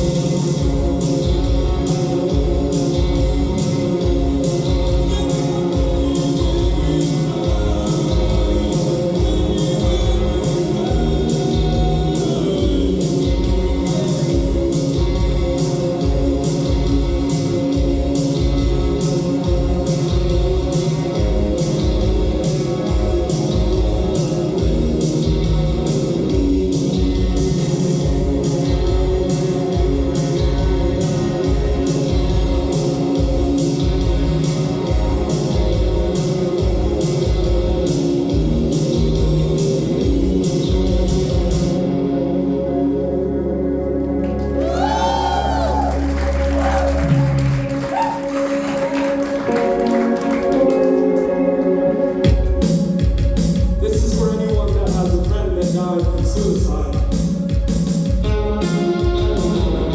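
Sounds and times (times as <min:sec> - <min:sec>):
person singing: 0:00.0 - 0:16.8, 0:58.3 - 0:59.9
live band playing: 0:00.0 - 0:42.0, 0:44.6 - 0:59.9
electric guitar: 0:43.8 - 0:53.8, 0:57.6 - 0:59.9
drum beat: 0:52.3 - 0:59.9.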